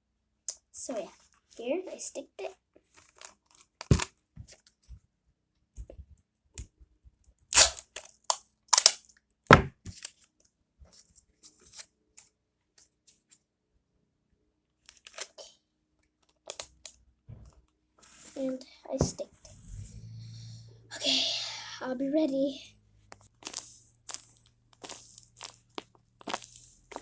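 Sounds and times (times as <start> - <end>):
paper and tape ripping: 7.5 - 8.1.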